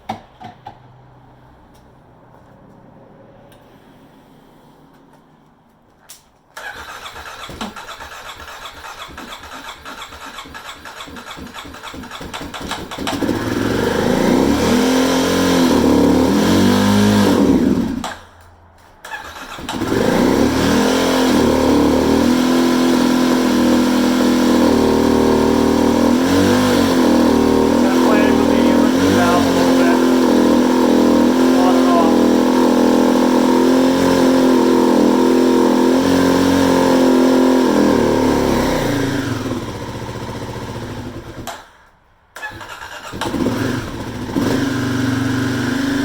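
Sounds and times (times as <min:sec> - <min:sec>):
motorcycle starter cranking: 0:06.6 - 0:13.7, 0:19.0 - 0:20.4, 0:42.4 - 0:44.3
motorcycle engine revving: 0:06.6 - 0:18.2, 0:19.1 - 0:41.7, 0:42.4 - 0:46.0.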